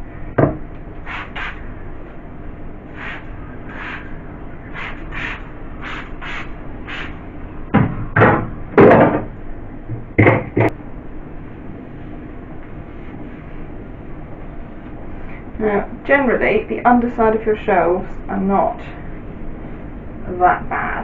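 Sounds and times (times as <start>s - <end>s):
spray bottle squirting: 1.1s - 1.6s, 4.8s - 7.1s.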